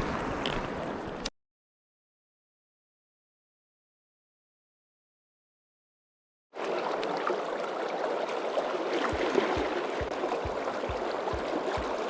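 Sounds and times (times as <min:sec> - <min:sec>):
river water rushing: 0:06.6 - 0:12.0
low regular thumps: 0:09.1 - 0:12.0.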